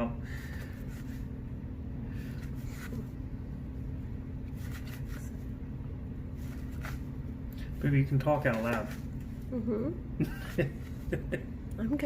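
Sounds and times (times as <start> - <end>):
low hum: 0.0 - 12.0
trading cards rustling: 4.5 - 5.5, 6.3 - 7.2, 8.3 - 9.3.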